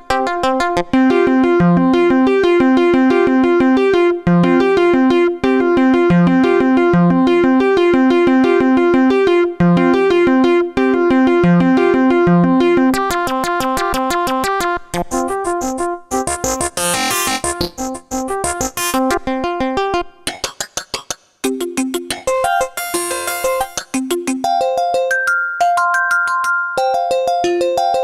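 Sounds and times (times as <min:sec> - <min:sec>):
arpeggiated synth sequence: 0:15.1 - 0:19.2, 0:21.4 - 0:28.0
glitchy synth stutters: 0:16.3 - 0:19.0.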